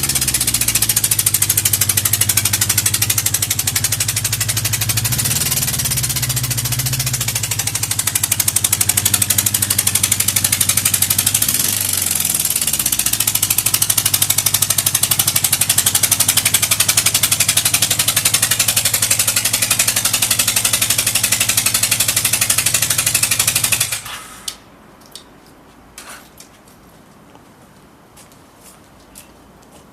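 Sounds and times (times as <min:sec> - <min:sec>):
motorcycle engine running: 0:00.0 - 0:24.1.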